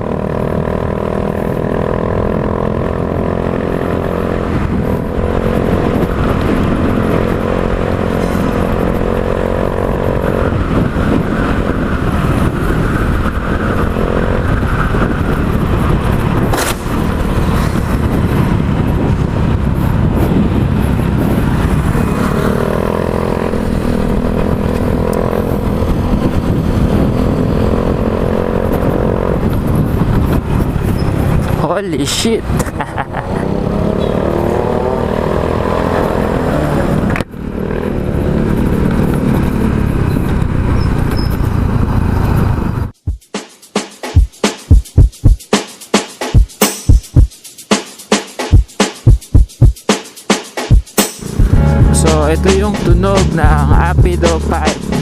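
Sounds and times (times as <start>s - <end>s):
sharp click: 16.5s - 17.0s.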